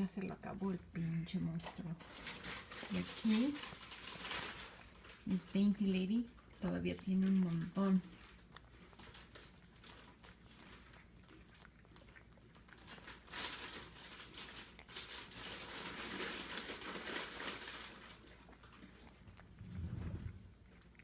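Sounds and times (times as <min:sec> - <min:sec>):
cat crunching and chewing: 0:00.0 - 0:21.0
short low bump: 0:19.5 - 0:20.5.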